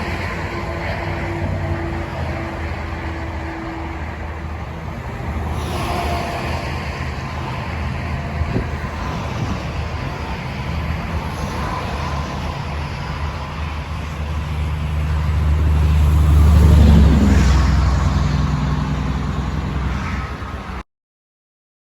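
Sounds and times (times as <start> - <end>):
road traffic rumble: 0.0 - 20.8
vehicle passing close: 0.0 - 20.8.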